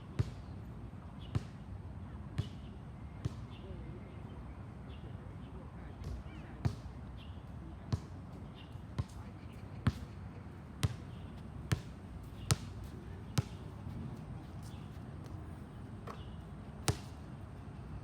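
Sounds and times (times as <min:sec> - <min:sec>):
low background noise: 0:00.0 - 0:18.0
basketball bouncing: 0:10.8 - 0:11.1, 0:11.7 - 0:12.8, 0:13.4 - 0:13.6, 0:16.0 - 0:17.2.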